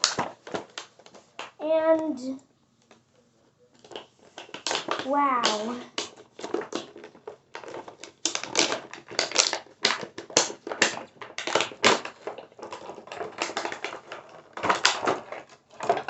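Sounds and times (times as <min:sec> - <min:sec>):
hard plastic clicking and clattering: 0:03.7 - 0:16.0.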